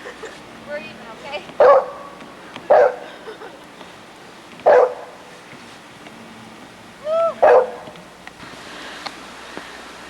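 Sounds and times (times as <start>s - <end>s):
dog barking: 1.6s - 2.1s, 2.7s - 3.0s, 4.6s - 5.2s, 7.4s - 7.8s.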